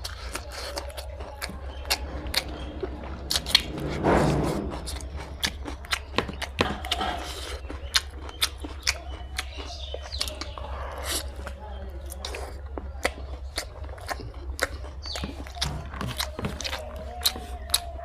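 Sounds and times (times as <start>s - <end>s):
chewing mouth sounds: 0.0s - 3.7s, 5.0s - 18.0s
steady low hum: 0.8s - 7.6s
rushing swell: 1.6s - 6.2s.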